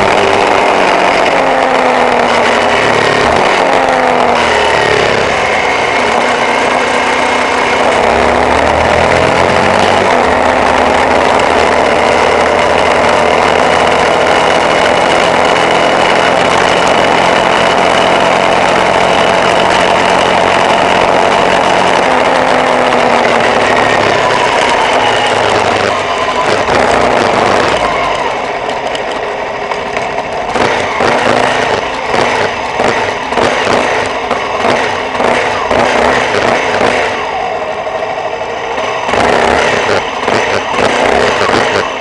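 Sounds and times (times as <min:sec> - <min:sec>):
off-road vehicle engine running: 0:00.0 - 0:42.0.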